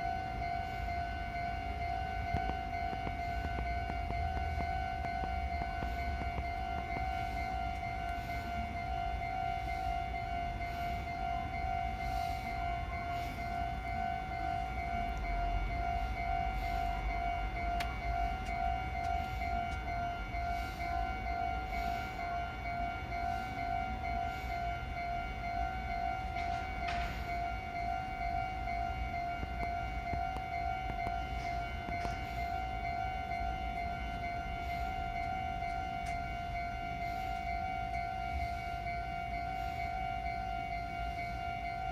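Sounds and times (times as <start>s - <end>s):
crossing warning bell dinging: 0.0s - 41.9s.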